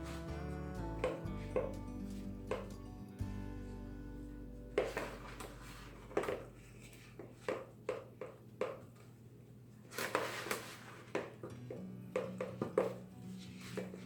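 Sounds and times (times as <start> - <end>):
scraping rustle: 9.8 - 11.4, 12.9 - 14.0.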